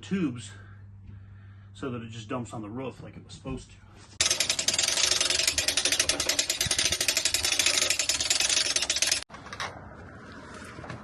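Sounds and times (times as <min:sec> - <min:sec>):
motor-driven machine rattling: 0:04.2 - 0:09.3.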